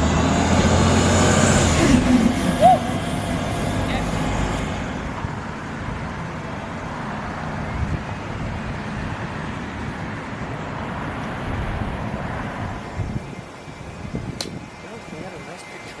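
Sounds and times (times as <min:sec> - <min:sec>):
bus engine rumbling: 0:00.0 - 0:10.0.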